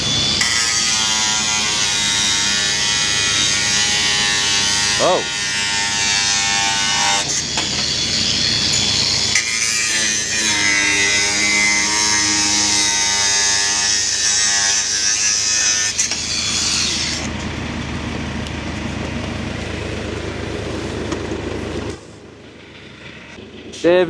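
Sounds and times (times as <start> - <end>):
angle grinder cutting steel: 0.0 - 17.6
machinery engine noise: 15.9 - 24.0.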